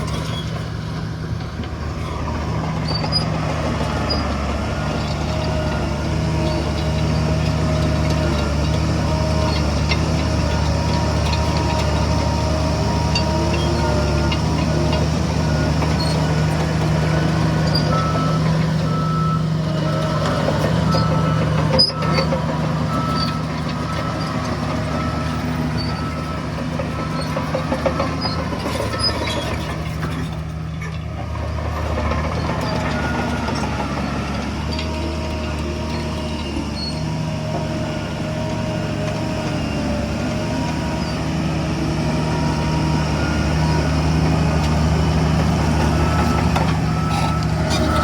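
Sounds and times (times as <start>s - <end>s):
heavy diesel machinery running: 0.0s - 48.0s
reversing alarm beeps: 11.0s - 29.6s, 32.6s - 34.3s, 42.2s - 48.0s.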